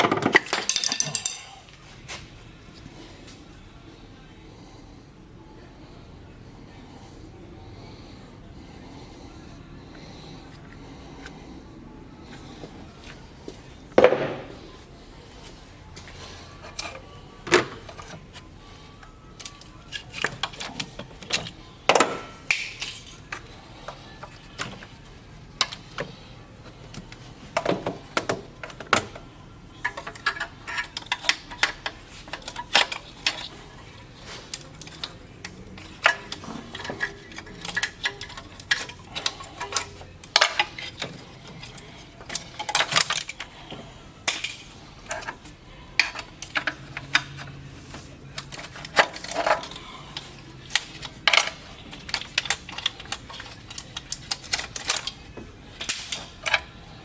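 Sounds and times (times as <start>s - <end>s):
metal tools clinking: 0.0s - 1.7s, 46.0s - 56.8s.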